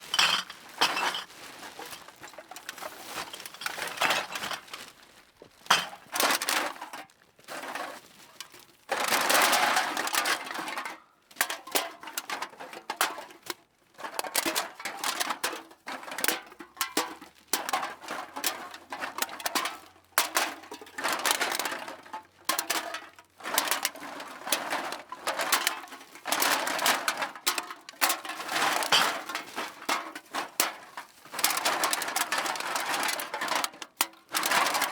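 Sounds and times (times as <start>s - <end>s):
cans clattering: 0.0s - 4.6s, 5.7s - 6.8s, 16.8s - 34.9s
bag rustling: 0.0s - 5.7s.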